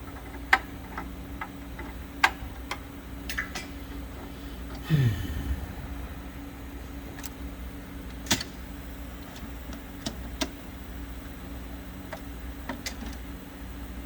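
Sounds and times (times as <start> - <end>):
steady low hum: 4.8 - 8.0.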